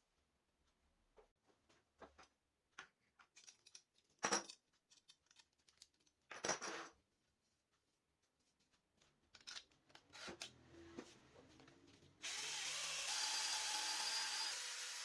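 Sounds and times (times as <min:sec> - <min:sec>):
tools and wood clicking: 0:02.2 - 0:06.7, 0:09.0 - 0:10.6.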